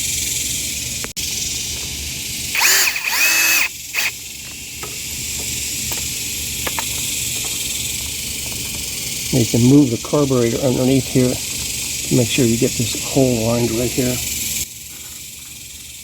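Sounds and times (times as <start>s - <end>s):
power drill driving screws: 2.5s - 4.1s.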